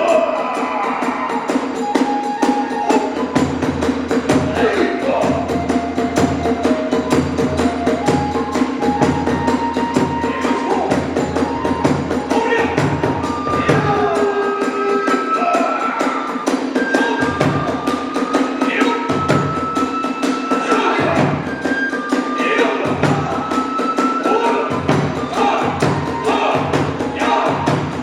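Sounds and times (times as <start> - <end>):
drums and hand cymbals beating: 0.0 - 28.0
high flute melody: 0.0 - 28.0.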